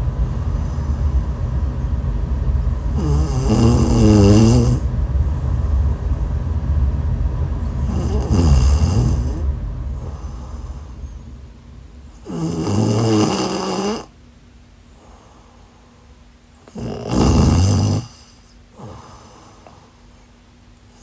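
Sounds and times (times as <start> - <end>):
steady low rumbling noise: 0.0 - 21.0
woman snoring: 3.0 - 4.8, 7.8 - 10.6, 12.2 - 14.1, 16.6 - 19.7.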